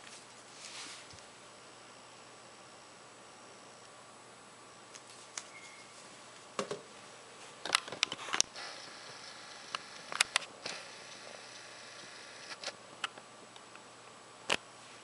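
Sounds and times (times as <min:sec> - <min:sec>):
faint hiss: 0:08.2 - 0:12.7.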